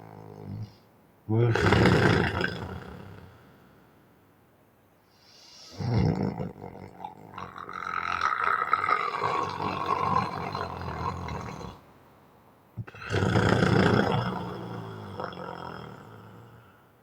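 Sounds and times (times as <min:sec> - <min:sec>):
person snoring: 0:00.4 - 0:03.4, 0:05.3 - 0:11.8, 0:12.8 - 0:16.7.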